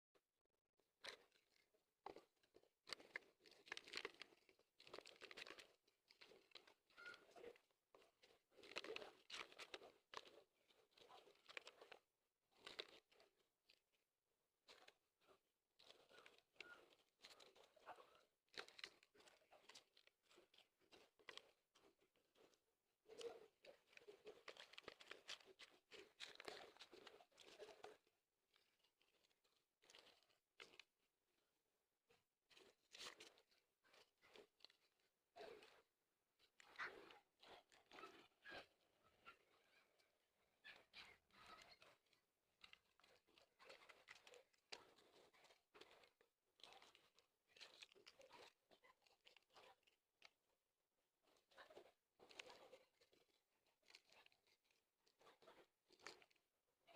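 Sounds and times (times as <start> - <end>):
dry mud crunching: 2.0 - 12.0, 23.7 - 28.0.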